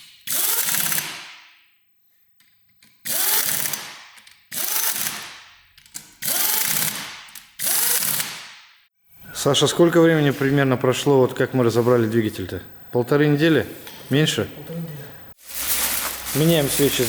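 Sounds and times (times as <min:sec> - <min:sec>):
power tool bursts: 0:07.6 - 0:08.4.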